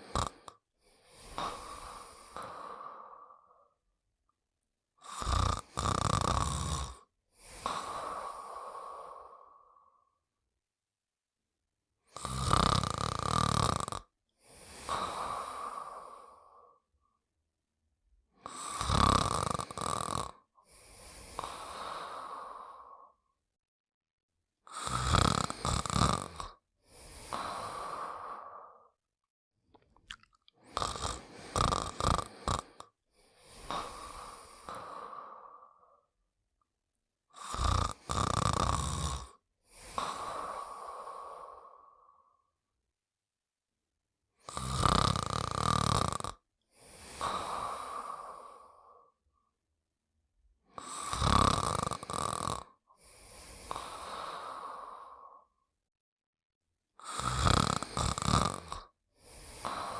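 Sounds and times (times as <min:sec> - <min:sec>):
cartoon character snoring: 0:00.0 - 0:02.6, 0:05.0 - 0:08.7, 0:12.1 - 0:16.8, 0:18.4 - 0:23.2, 0:24.7 - 0:29.0, 0:30.6 - 0:36.1, 0:37.3 - 0:42.3, 0:44.4 - 0:49.2, 0:50.7 - 0:55.7, 0:57.0 - 0:59.9.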